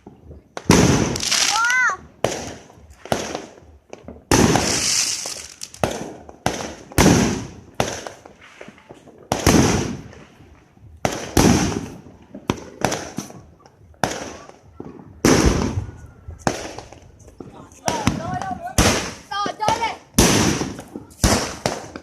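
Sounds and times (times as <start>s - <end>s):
fireworks bangs: 0.0s - 22.0s.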